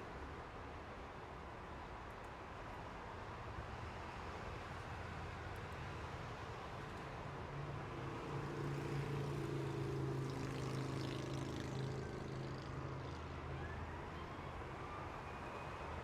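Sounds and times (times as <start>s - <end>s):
hum of passing vehicles: 4.1s - 15.0s.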